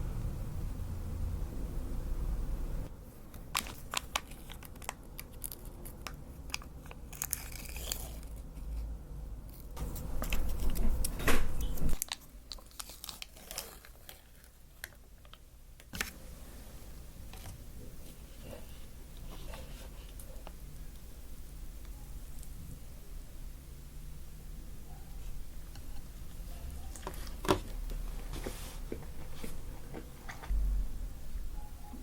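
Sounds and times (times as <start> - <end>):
food packaging crinkling: 3.3 - 8.9, 9.5 - 16.2
low rumble: 30.4 - 31.7.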